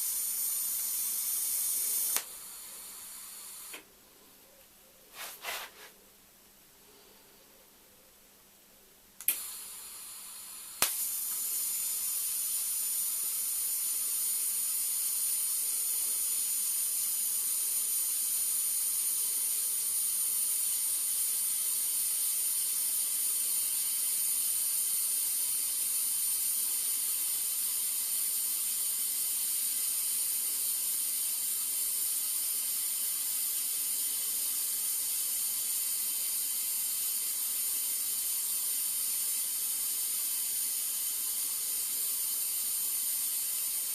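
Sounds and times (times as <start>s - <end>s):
welding arc click: 0.0s - 3.9s, 9.2s - 9.9s, 10.6s - 15.5s
welding arc hissing: 0.0s - 3.9s, 9.2s - 43.9s.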